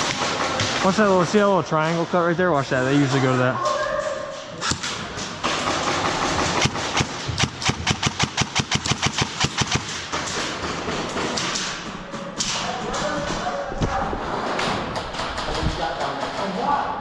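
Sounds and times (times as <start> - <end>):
airsoft gun firing full auto: 4.8 - 11.6.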